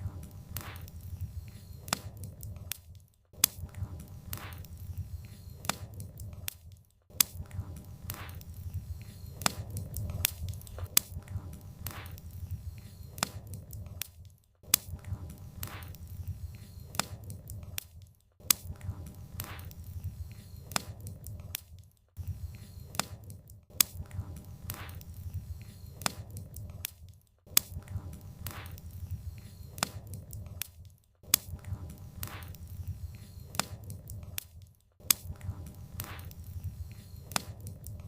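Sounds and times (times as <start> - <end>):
low rumble of flames: 0.0 - 2.8, 3.4 - 6.6, 7.2 - 14.1, 14.7 - 17.8, 18.5 - 21.6, 22.2 - 26.9, 27.6 - 30.7, 31.3 - 34.4, 35.2 - 38.0
firewood popping and snapping: 9.4 - 12.2.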